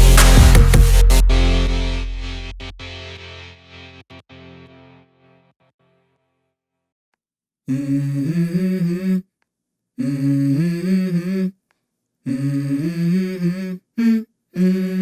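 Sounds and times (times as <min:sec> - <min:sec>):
wordless hummed vocal: 0:07.7 - 0:09.3, 0:10.0 - 0:11.6, 0:12.3 - 0:15.0.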